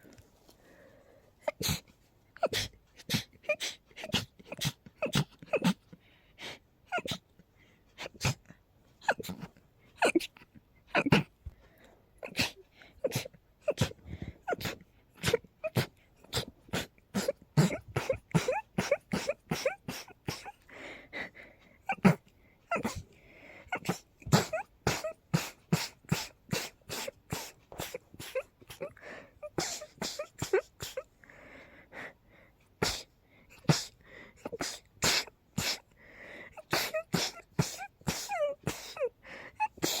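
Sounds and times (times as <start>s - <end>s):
person sneezing: 1.5s - 5.8s, 12.2s - 20.6s, 21.9s - 23.1s, 23.7s - 31.1s, 32.8s - 35.9s, 36.6s - 40.0s.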